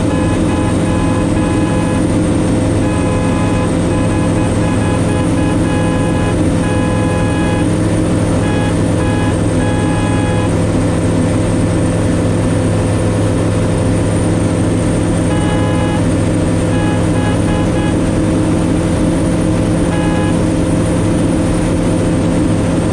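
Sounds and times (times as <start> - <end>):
short high beeps: 0.0 - 10.6, 15.2 - 20.6
aircraft engine and propeller drone: 0.0 - 22.9.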